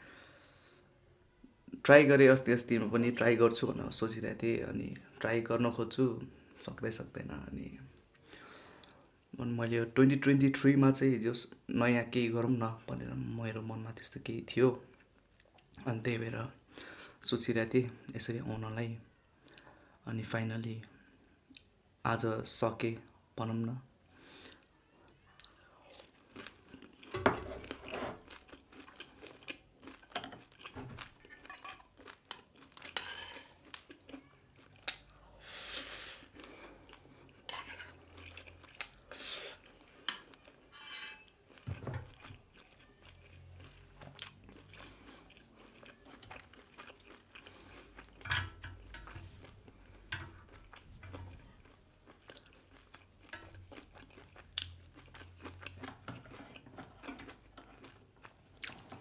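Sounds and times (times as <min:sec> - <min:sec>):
person chewing food: 0:24.5 - 0:59.0.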